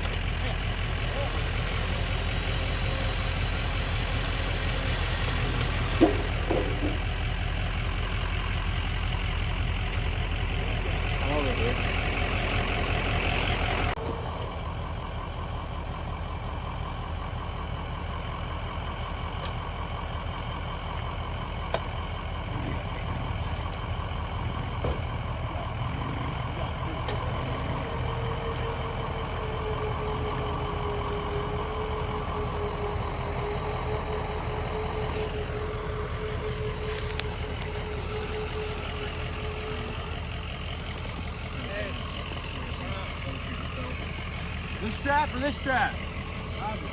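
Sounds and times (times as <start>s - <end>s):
heavy engine running: 0.0s - 46.9s
steady whine: 20.2s - 46.9s.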